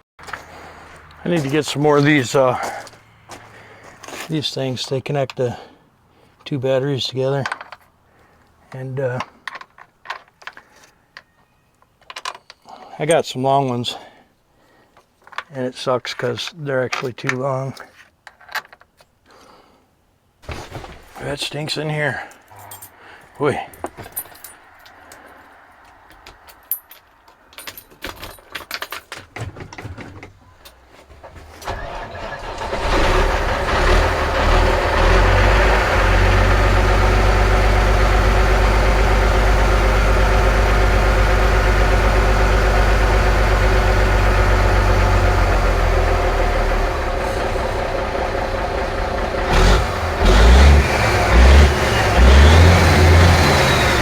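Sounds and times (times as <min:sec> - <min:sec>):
diesel truck engine starting and running: 0:00.2 - 0:03.8, 0:31.3 - 0:54.0
engine revving: 0:31.7 - 0:54.0.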